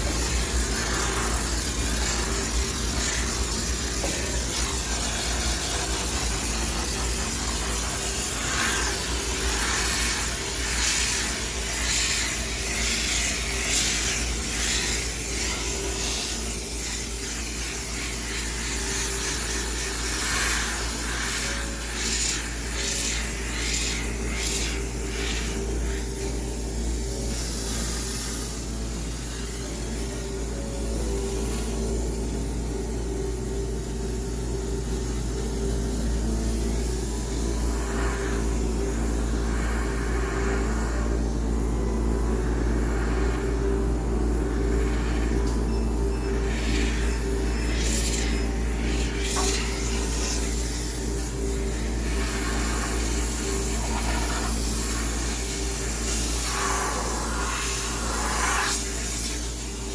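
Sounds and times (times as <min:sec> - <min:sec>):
steam unit humming: 0:00.0 - 0:59.9
steam hissing in short blasts: 0:52.1 - 0:59.9.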